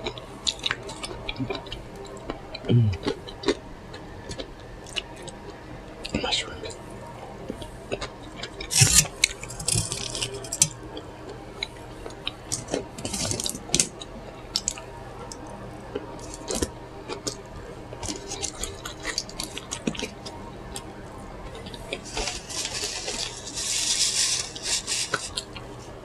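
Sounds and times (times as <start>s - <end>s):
person chewing: 0.1s - 3.6s, 21.6s - 25.6s.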